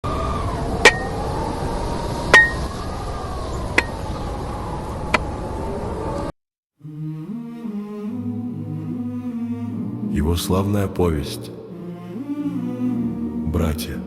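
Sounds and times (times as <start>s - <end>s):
rushing noise with wavering tones: 0.0s - 6.3s.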